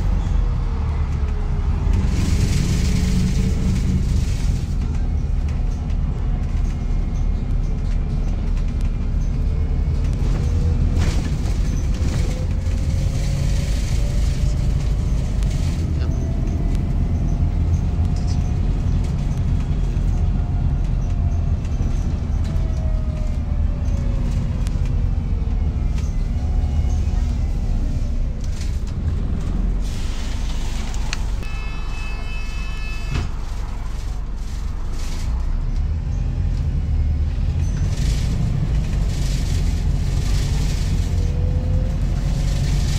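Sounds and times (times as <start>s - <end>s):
bus body rattling: 0.0s - 31.5s, 32.2s - 42.9s
bus engine rumble and whine: 0.0s - 42.9s
short electronic beep: 31.4s - 33.3s.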